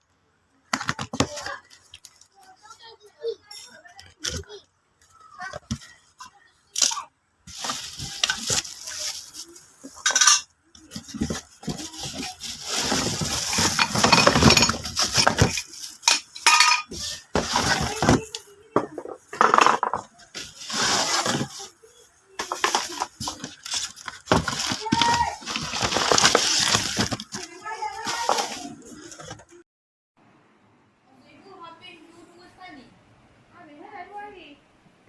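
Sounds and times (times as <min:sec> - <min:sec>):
rustling and crinkling: 0:00.7 - 0:03.0, 0:07.4 - 0:29.6.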